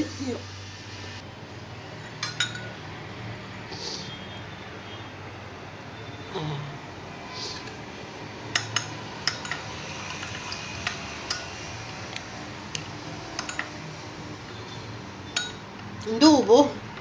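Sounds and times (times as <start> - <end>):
spoon clinking against container: 2.0 - 2.8, 8.5 - 11.6, 13.4 - 13.8, 15.3 - 15.6.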